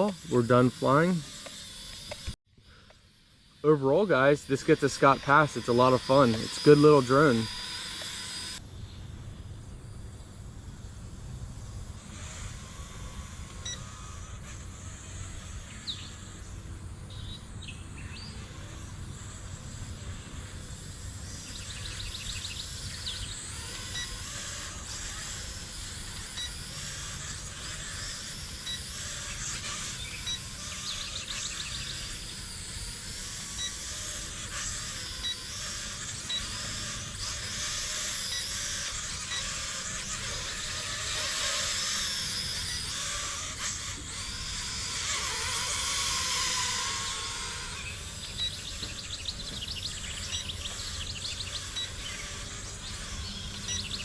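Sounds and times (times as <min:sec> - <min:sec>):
insect-like hiss: 0:00.0 - 0:16.7
birds chirping: 0:03.7 - 0:08.4, 0:21.3 - 0:25.3, 0:28.7 - 0:33.0, 0:46.6 - 0:54.0.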